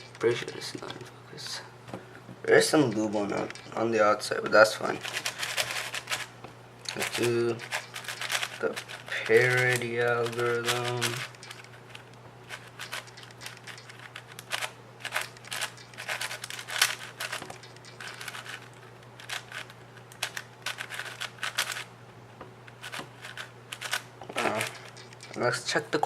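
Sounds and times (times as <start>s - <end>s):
plastic clicks of speed cube turning: 6.9s - 21.8s.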